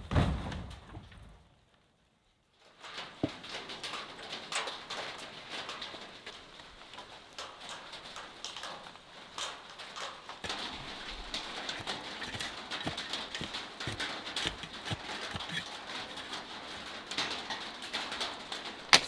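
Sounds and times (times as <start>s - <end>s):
light rain hiss: 1.7s - 14.4s
raindrops tapping on surfaces: 2.7s - 11.7s.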